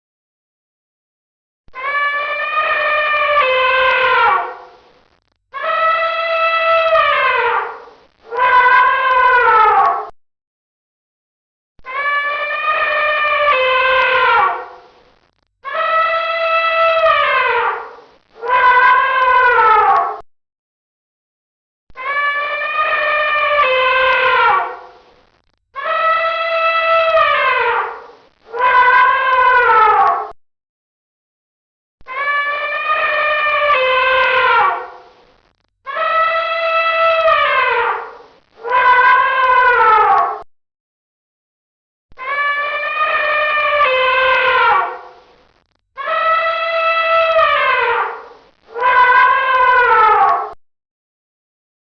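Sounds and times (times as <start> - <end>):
elephant trumpeting: 1.8 - 4.7, 12.0 - 14.8, 22.0 - 24.9, 25.8 - 30.2, 32.1 - 35.1, 35.9 - 40.2, 42.2 - 45.2, 46.0 - 50.5.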